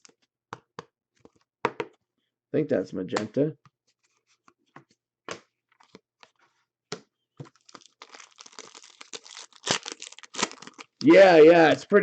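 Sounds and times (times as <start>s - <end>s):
trading cards crinkling and rustling: 7.4s - 11.8s.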